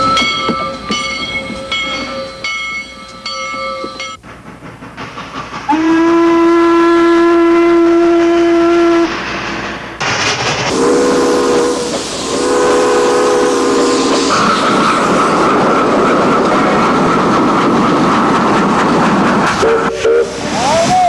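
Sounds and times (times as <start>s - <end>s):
train bell ringing: 0.0s - 4.2s
train whistle blast: 5.7s - 9.1s, 10.7s - 14.8s, 19.6s - 21.0s.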